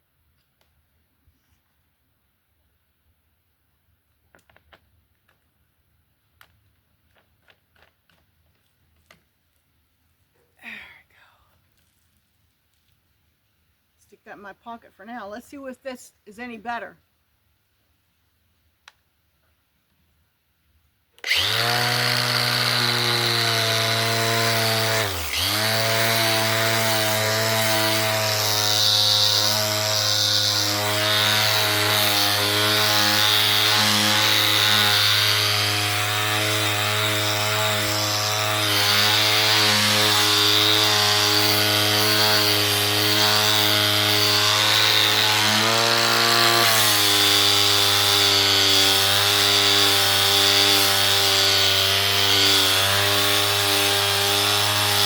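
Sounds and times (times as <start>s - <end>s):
angle grinder sanding wood: 21.2s - 55.0s.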